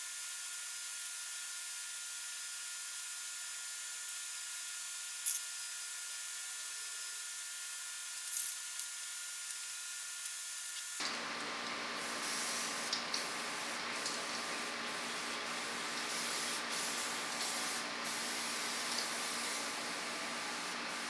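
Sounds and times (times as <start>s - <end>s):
aerosol can spraying: 11.0s - 21.0s
steady background whir: 11.0s - 21.0s.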